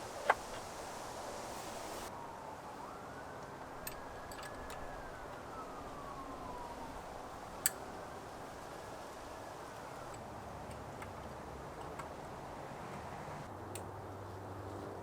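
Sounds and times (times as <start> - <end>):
faint siren wailing: 0.0 - 10.2.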